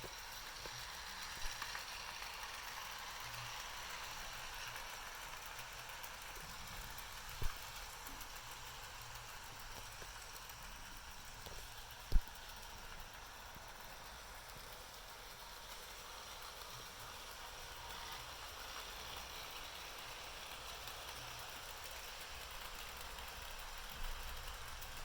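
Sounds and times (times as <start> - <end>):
model train motor whir: 0.0 - 25.0.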